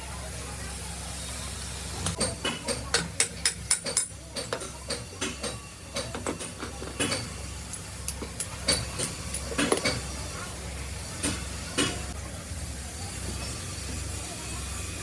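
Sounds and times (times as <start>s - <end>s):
hand tools knocking and clicking: 2.1s - 10.1s, 11.2s - 12.0s.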